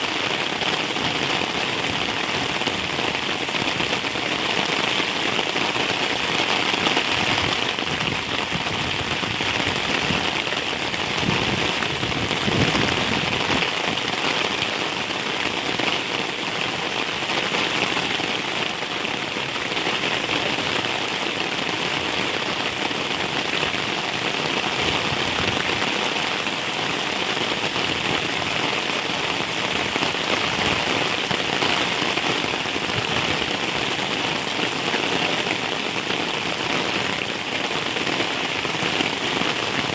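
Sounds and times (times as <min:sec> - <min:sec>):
heavy rain: 0:00.0 - 0:39.9.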